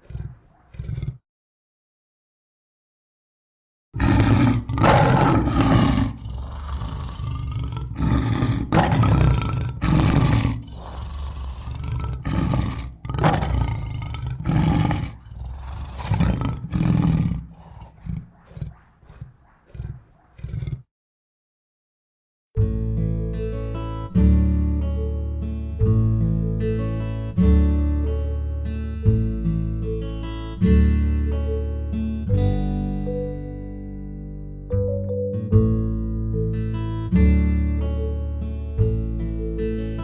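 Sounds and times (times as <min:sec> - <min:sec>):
lion roaring: 0:00.0 - 0:01.2, 0:04.0 - 0:20.9.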